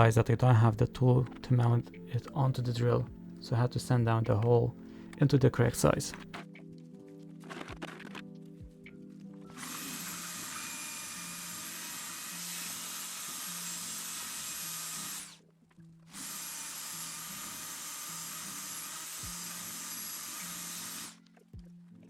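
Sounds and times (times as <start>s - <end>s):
quiet background music: 0.0s - 22.0s
power tool whining: 9.5s - 15.4s, 16.1s - 21.2s.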